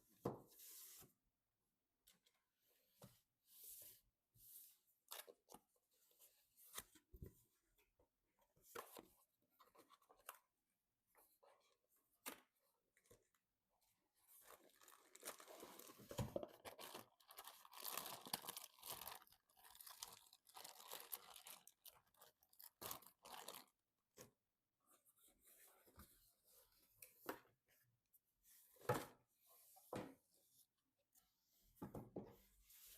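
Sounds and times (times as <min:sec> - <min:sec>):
rustling and scraping packaging: 0:14.2 - 0:23.7.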